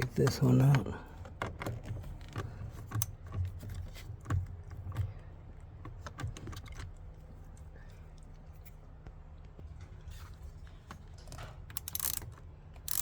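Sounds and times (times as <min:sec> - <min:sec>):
socket wrench clicking: 0:11.7 - 0:13.0.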